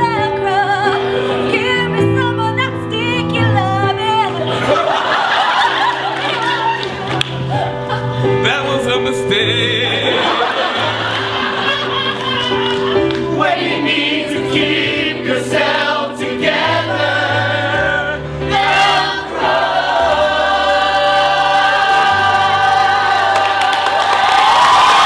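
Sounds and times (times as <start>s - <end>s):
musical accompaniment: 0.0s - 25.0s
several voices singing: 12.9s - 25.0s.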